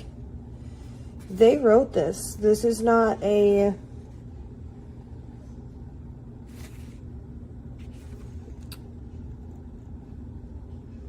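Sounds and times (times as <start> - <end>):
low background hum: 0.0 - 11.0.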